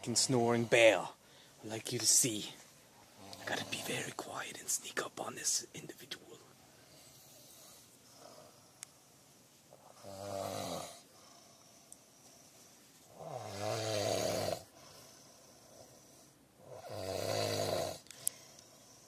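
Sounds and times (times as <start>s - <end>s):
person snoring: 9.9s - 11.0s, 13.1s - 14.7s, 16.6s - 18.0s.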